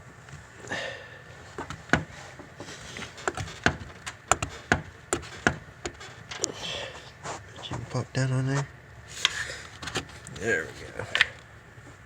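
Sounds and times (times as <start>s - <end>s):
parts clicking and knocking: 1.5s - 6.6s.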